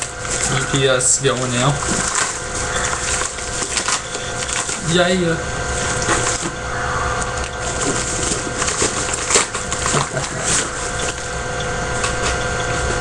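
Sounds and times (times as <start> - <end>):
steady background hum: 0.0 - 13.0
cardboard box rustling and scraping: 7.6 - 11.0.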